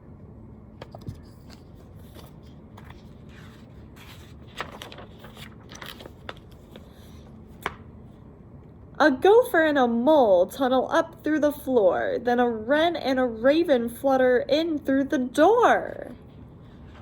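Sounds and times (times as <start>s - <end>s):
paper rustling: 0.8s - 7.8s.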